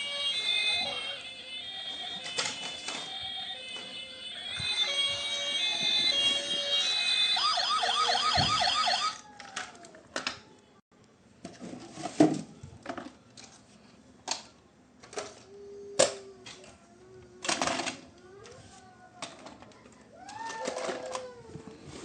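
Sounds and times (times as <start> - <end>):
toy electronic siren: 0.0 - 9.5
plastic toy being handled: 1.8 - 7.2, 9.2 - 10.5, 11.4 - 22.0.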